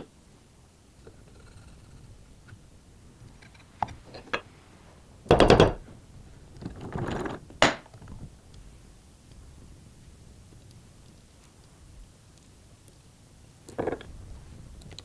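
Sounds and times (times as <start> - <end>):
tools knocking: 5.3 - 5.8.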